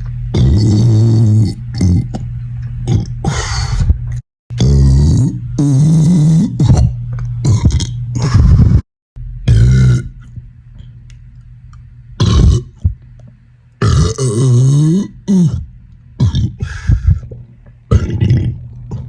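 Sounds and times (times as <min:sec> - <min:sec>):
man burping loudly: 0:09.5 - 0:10.3, 0:12.2 - 0:12.8, 0:13.8 - 0:16.7.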